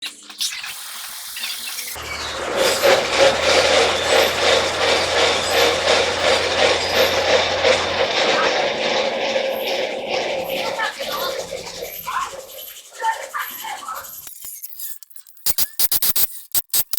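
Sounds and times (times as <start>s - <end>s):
wheel scraping squeal: 1.5s - 14.3s.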